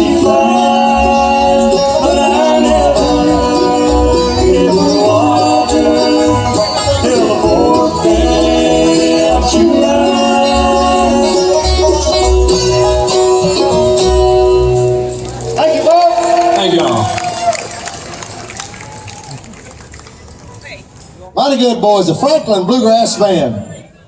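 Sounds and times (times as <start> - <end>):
bluegrass band playing: 0.0 - 18.6.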